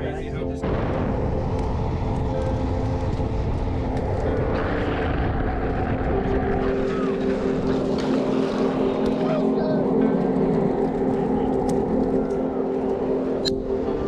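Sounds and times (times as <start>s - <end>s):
wind rushing over a camera: 0.6s - 9.3s
skateboard wheels rolling on asphalt: 1.0s - 14.0s.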